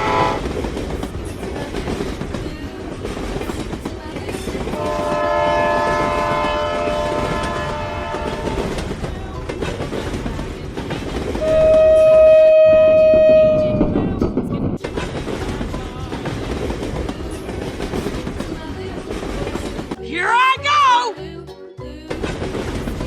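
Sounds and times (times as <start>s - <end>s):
single-note train horn: 0.0s - 0.4s, 4.8s - 8.8s, 11.4s - 13.9s
multi-tone train horn: 0.0s - 0.5s, 4.8s - 8.8s, 11.4s - 14.0s
train wheels rumbling and clattering: 0.0s - 20.0s, 22.1s - 23.0s.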